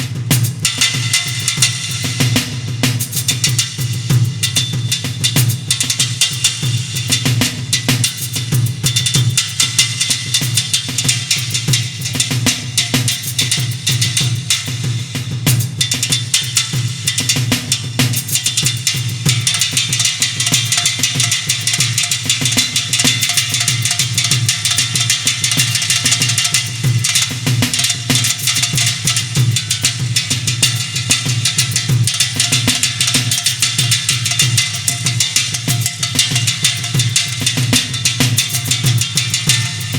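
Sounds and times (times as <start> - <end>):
fast drum solo: 0.0 - 39.9
cymbals ringing: 18.8 - 39.9.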